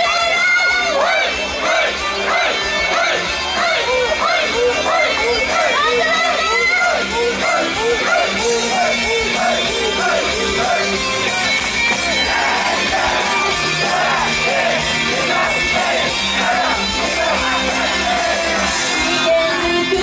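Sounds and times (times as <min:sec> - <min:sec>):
rock-pop band playing: 0:00.0 - 0:20.0
women singing pop melody: 0:12.5 - 0:20.0.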